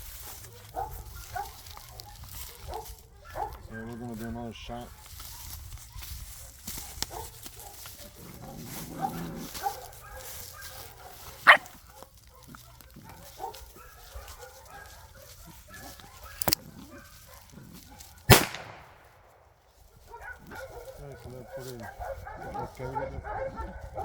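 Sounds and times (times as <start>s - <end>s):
loud blank gunshot: 18.3s - 19.4s.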